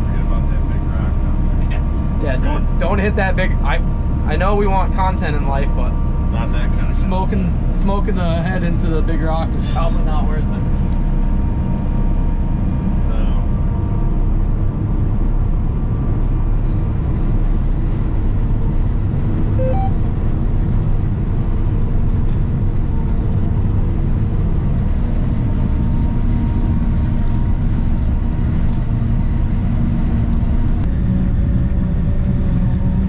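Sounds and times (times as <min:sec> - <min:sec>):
harvester engine drone: 0:00.0 - 0:33.0
two-note electronic beep: 0:19.6 - 0:20.0.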